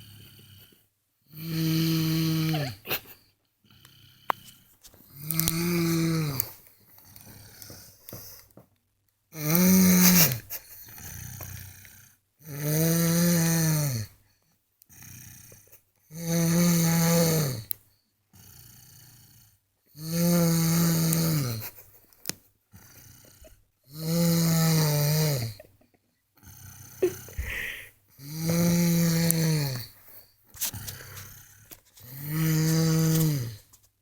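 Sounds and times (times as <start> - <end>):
boy snoring: 0.0 - 8.5, 9.4 - 14.2, 14.9 - 17.7, 18.4 - 21.8, 22.8 - 25.8, 26.4 - 30.0, 30.6 - 33.7
quiet breathing: 2.2 - 8.6, 26.4 - 33.7.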